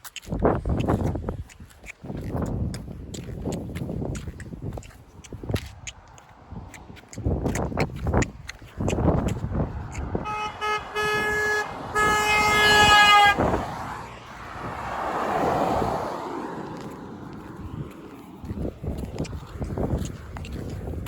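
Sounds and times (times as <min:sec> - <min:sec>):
vehicle driving past: 0:09.5 - 0:19.7
vehicle horn honking: 0:10.1 - 0:13.6.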